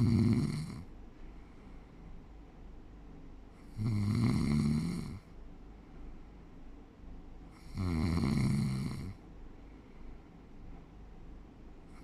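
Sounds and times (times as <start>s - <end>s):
loud low rattling snore: 0.0s - 0.9s, 3.7s - 5.2s, 7.6s - 9.2s.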